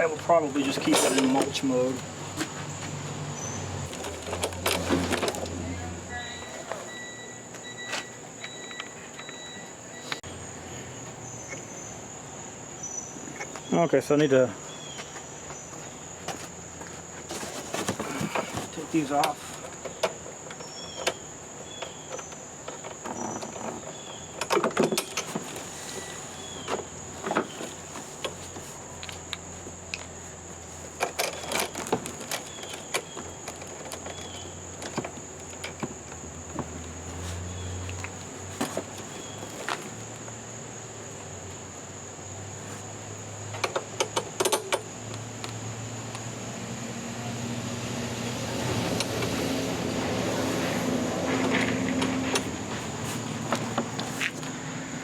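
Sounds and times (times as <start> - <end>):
parts clicking and rattling: 3.8 - 5.7, 17.2 - 30.1, 30.8 - 40.3, 43.5 - 46.3, 51.2 - 54.5
high insect drone: 4.8 - 55.0.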